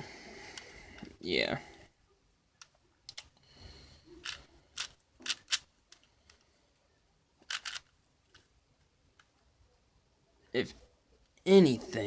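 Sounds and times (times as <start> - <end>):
plastic puzzle cube clicks: 4.2 - 6.4, 7.4 - 8.5.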